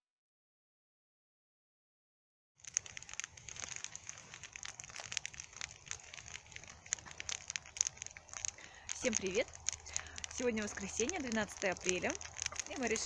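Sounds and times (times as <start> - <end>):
campfire crackling and popping: 2.6 - 13.0.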